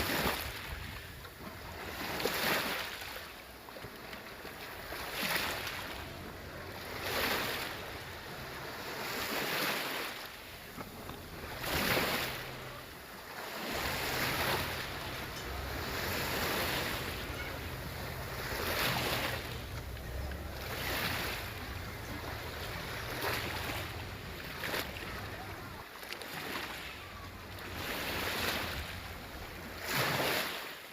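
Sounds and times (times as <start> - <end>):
sea waves washing onto shore: 0.0 - 30.9
steady low rumble: 14.7 - 25.8.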